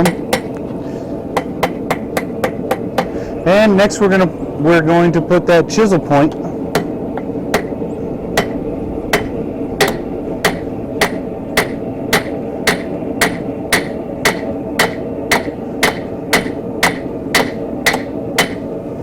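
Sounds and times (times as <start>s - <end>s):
hammer striking steel on anvil: 0.0s - 0.5s, 1.4s - 3.1s, 6.7s - 7.8s, 8.4s - 8.6s, 9.2s - 18.7s.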